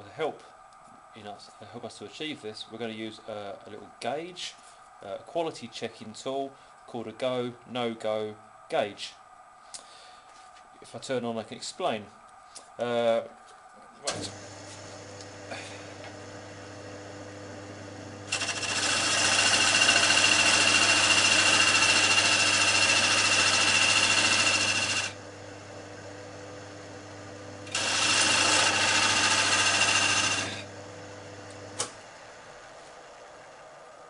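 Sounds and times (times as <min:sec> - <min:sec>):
wood lathe humming: 0:14.1 - 0:33.9.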